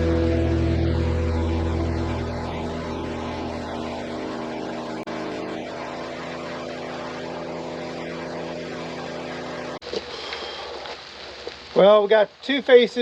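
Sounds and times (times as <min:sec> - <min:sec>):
sawmill engine running: 0:00.0 - 0:09.8.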